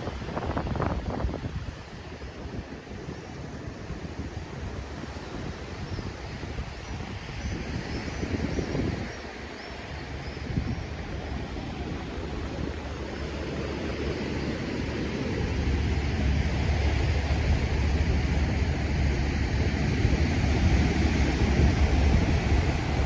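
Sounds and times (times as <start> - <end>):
sea surf on beach: 0.0 - 23.0
wind buffeting microphone: 0.0 - 23.0.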